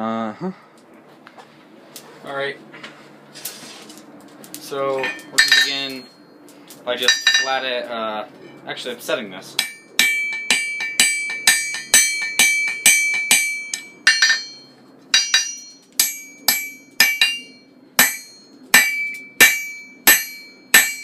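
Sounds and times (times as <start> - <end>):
hammer striking steel on anvil: 5.0 - 6.2, 7.0 - 7.6, 9.6 - 21.0.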